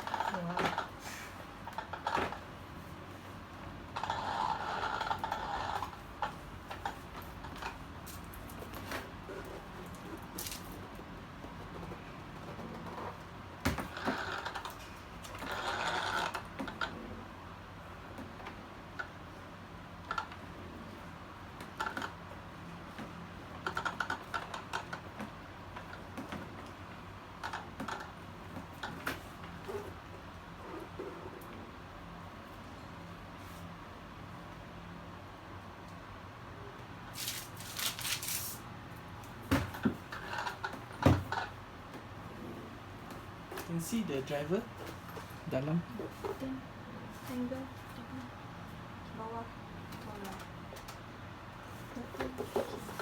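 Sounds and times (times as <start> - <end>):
packaging rustling: 37.1 - 38.6.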